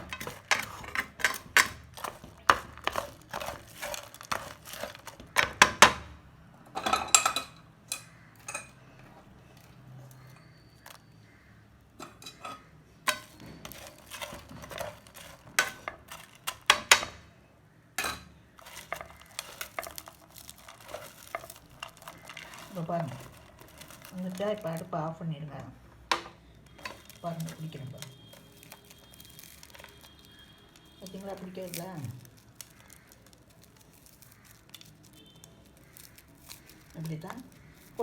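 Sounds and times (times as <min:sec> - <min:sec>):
metal spoon clinking against pan: 0:06.8 - 0:08.8, 0:12.0 - 0:17.2.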